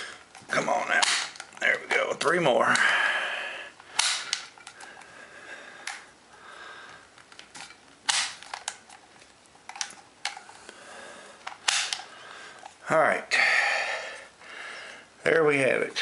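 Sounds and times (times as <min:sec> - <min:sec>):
cartridges clicking into magazine: 0:03.9 - 0:04.8, 0:07.4 - 0:09.0, 0:11.4 - 0:12.1.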